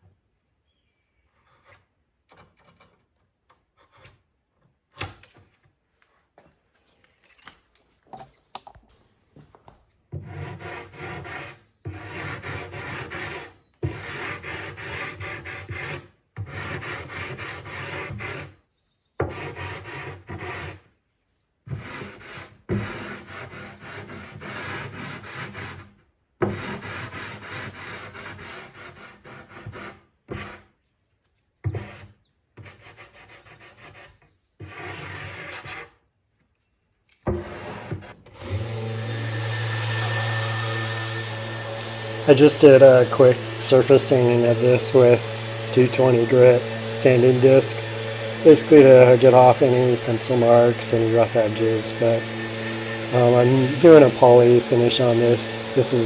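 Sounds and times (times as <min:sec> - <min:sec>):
sanding on wood: 0:10.2 - 0:18.6, 0:19.2 - 0:20.8, 0:21.8 - 0:30.8, 0:31.7 - 0:36.0, 0:37.3 - 0:56.0.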